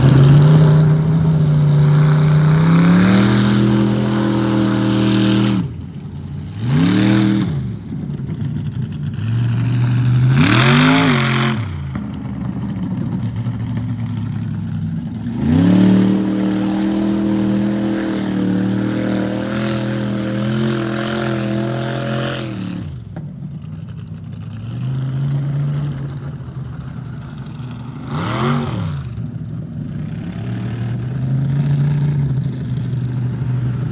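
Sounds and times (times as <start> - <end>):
engine revving hard: 0.0 - 5.8, 6.5 - 7.8, 9.2 - 12.0, 15.2 - 23.1, 27.9 - 29.2
engine throttle blips: 0.0 - 33.9.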